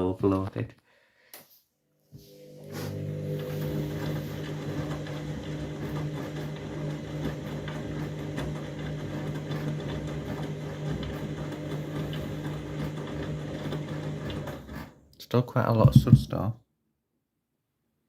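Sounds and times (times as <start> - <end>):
washing machine motor hum: 2.2 - 15.1, 15.7 - 16.4.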